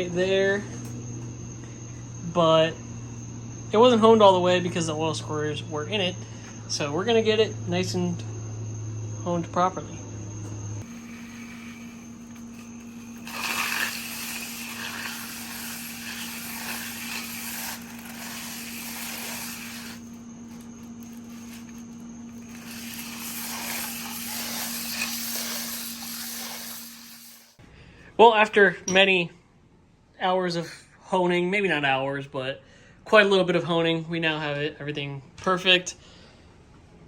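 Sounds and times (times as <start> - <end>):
steady motor tone: 0.1 - 27.6
cylinder hone scraping: 10.8 - 27.6.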